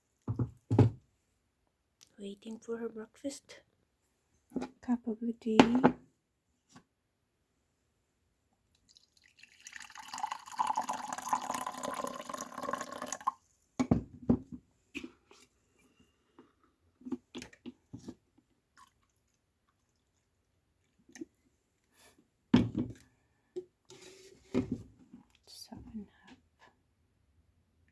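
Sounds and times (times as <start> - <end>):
liquid pouring into a cup: 8.8 - 13.4.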